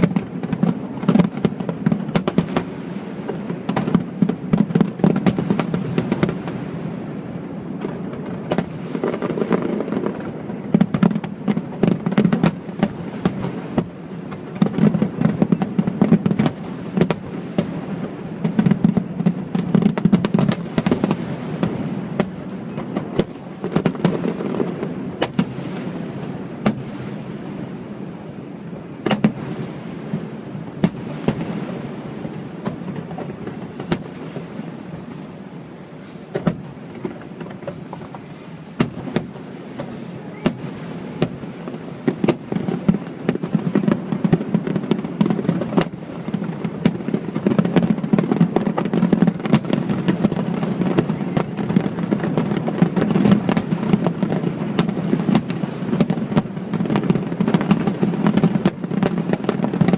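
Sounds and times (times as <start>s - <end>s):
fireworks bangs and crackles: 0.0s - 59.9s.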